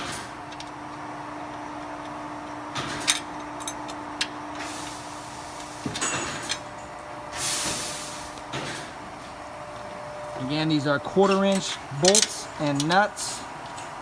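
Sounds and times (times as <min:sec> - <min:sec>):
short rushing hiss: 0:07.4 - 0:08.4.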